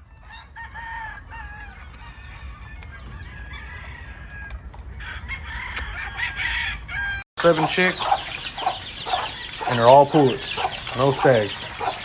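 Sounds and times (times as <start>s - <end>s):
rooster crowing: 0.1s - 12.0s
chickens clucking: 7.4s - 12.0s
chicks peeping: 7.4s - 12.0s.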